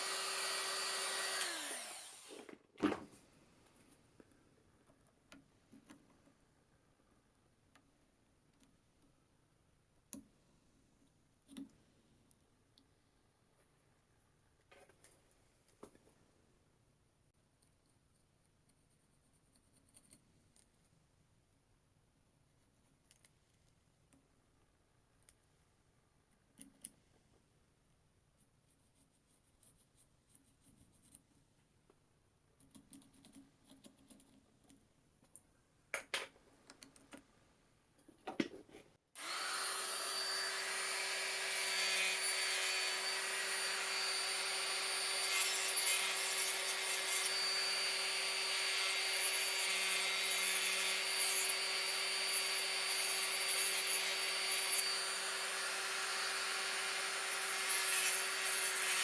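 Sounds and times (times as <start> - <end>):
power tool running: 0.0 - 2.5, 39.2 - 59.0.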